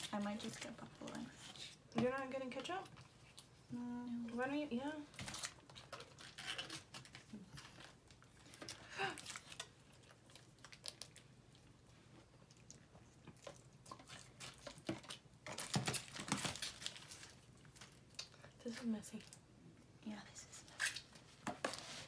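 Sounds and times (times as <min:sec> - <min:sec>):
food packaging clicks and crinkles: 0:05.1 - 0:19.5.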